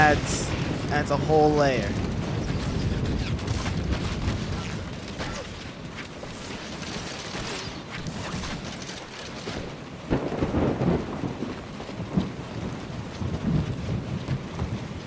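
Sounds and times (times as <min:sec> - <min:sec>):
steady low rumble: 0:00.0 - 0:05.0
booms and crashes: 0:00.0 - 0:08.8
gunshots: 0:00.0 - 0:09.8.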